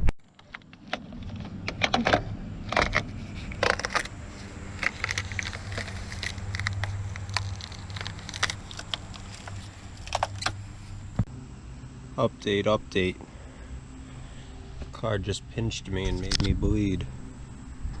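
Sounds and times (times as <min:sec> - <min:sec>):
steady low hum: 0:00.0 - 0:18.0
trim parts clicking and scraping: 0:00.2 - 0:11.3, 0:15.9 - 0:16.7.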